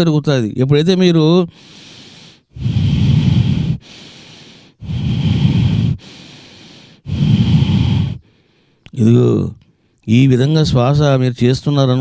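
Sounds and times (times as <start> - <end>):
man breathing forcefully: 1.5 - 8.8.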